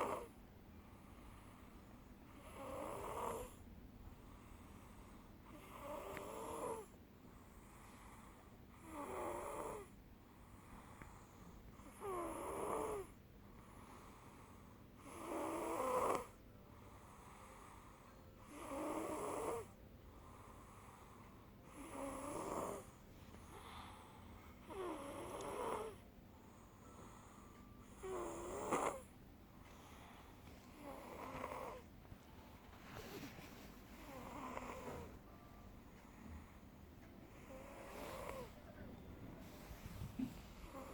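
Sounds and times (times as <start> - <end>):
person snoring: 37.3 - 38.7.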